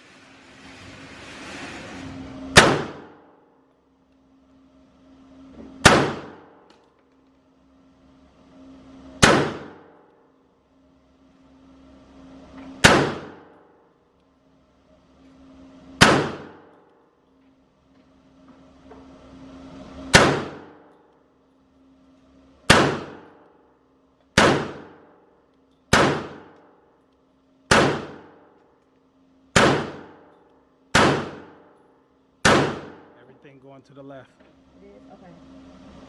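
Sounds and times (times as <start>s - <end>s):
pistol shots with echo: 2.6s - 3.1s, 5.8s - 6.5s, 9.2s - 9.8s, 12.8s - 13.5s, 16.0s - 16.6s, 20.1s - 20.7s, 22.7s - 23.3s, 24.4s - 25.0s, 25.9s - 26.5s, 27.7s - 28.3s, 29.6s - 30.2s, 31.0s - 31.6s, 32.4s - 33.1s.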